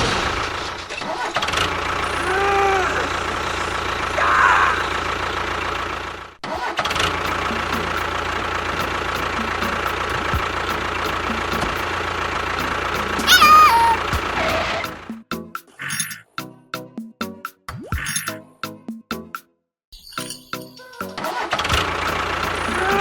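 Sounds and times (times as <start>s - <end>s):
small tractor motor running: 1.1s - 15.1s, 21.5s - 23.0s.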